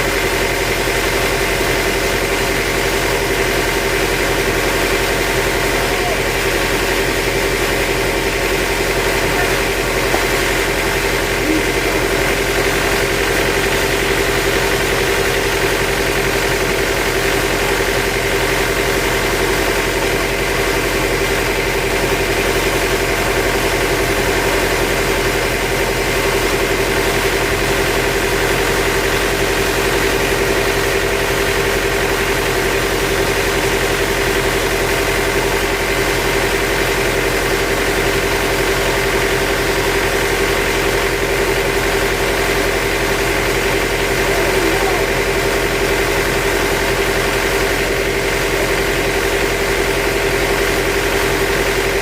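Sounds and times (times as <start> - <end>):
sawmill machinery drone: 0.0 - 52.0
steady machine whine: 2.5 - 30.2.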